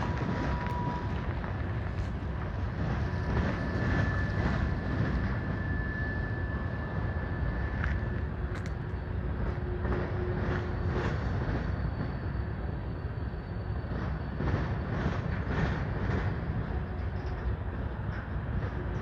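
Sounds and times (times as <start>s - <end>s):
freight train cars rumbling: 0.0s - 19.0s
steel wheels clacking on rails: 13.8s - 19.0s.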